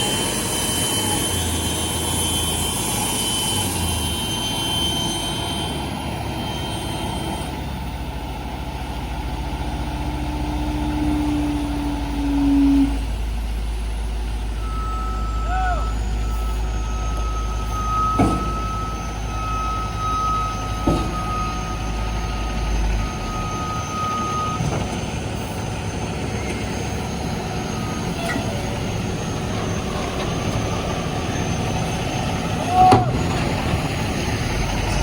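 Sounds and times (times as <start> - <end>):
deep engine rumble: 7.4 - 35.0.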